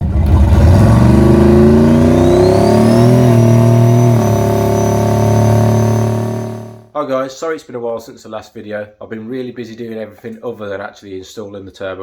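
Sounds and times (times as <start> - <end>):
high turbo whine: 0.0 - 6.9
truck engine revving: 0.0 - 6.9.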